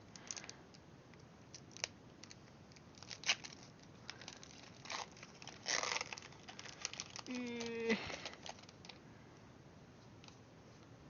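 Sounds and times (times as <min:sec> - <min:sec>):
foil wrapper crinkling and tearing: 0:00.1 - 0:00.6, 0:01.5 - 0:09.0.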